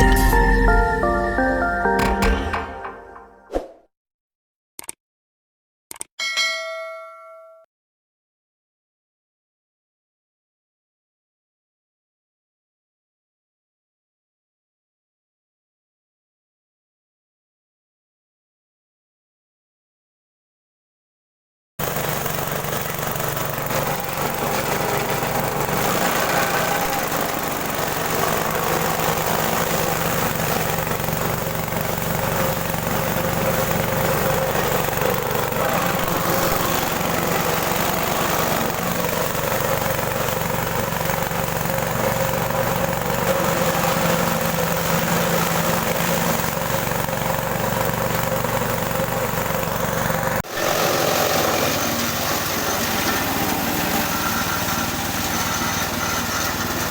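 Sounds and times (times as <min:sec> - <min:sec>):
small engine running a chopper: 0:00.0 - 0:00.4, 0:21.8 - 0:56.9.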